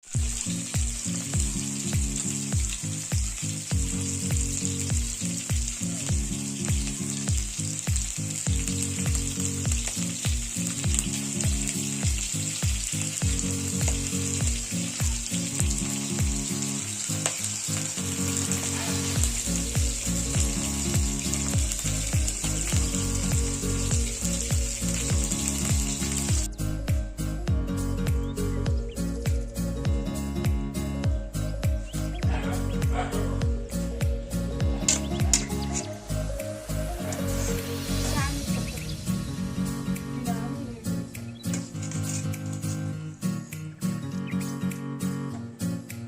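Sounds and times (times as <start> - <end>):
bass drum beat: 0.0 - 16.8, 17.8 - 41.6
constant high hiss: 0.1 - 26.5
held music notes: 0.1 - 46.0.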